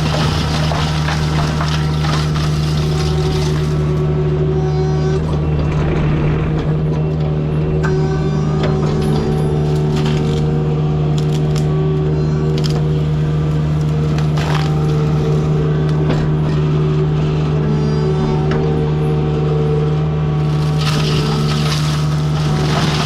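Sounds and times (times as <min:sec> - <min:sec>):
wood cracking and snapping: 0:00.0 - 0:04.0, 0:09.6 - 0:11.7, 0:12.4 - 0:16.0, 0:20.4 - 0:23.0
forestry mulcher grinding wood: 0:00.0 - 0:23.0.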